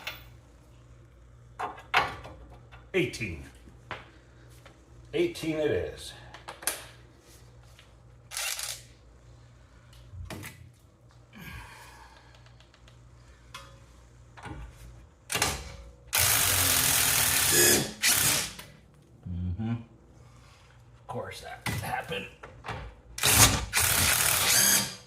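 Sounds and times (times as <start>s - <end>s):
impact wrench burst: 15.3s - 18.7s, 23.2s - 25.0s.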